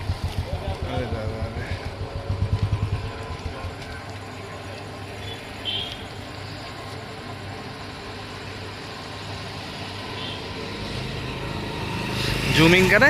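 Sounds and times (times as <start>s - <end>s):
distant road traffic hum: 0.0s - 13.0s.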